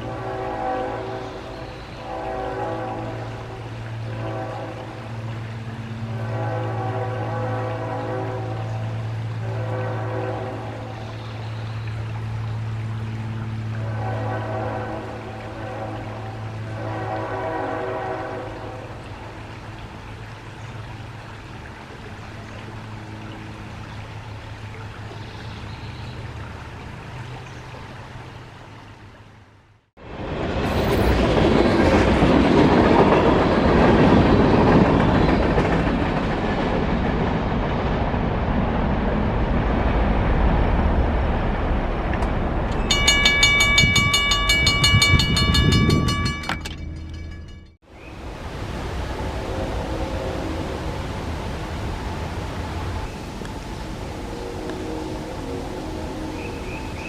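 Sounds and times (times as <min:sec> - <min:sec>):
distant locomotive horn: 0:00.0 - 0:12.4, 0:13.0 - 0:19.7, 0:48.6 - 0:57.0
train rumble and rail clatter: 0:00.0 - 0:29.3, 0:30.0 - 0:57.0
crossing bell ringing: 0:42.7 - 0:47.8.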